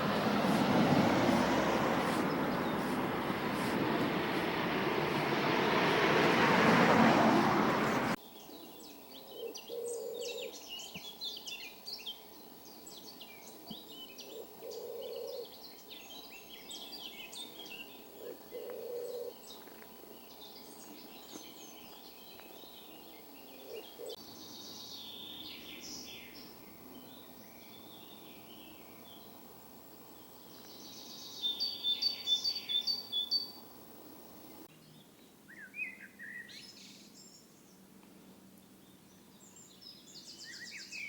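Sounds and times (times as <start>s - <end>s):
birds chirping and twittering: 0.0s - 5.9s, 7.8s - 41.0s
loud rushing noise: 0.0s - 8.2s
low steady bird call: 7.8s - 41.0s.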